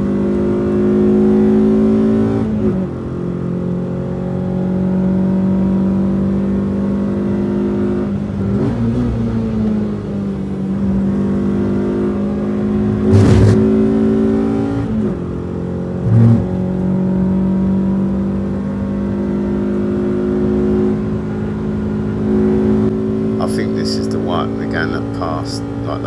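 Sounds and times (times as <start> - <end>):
car engine running hard: 0.0 - 26.0
loud thump: 13.1 - 13.8.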